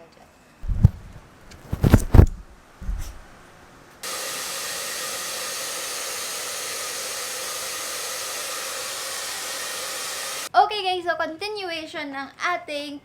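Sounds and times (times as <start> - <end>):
blower whooshing air: 0.6 - 3.3, 4.0 - 10.5.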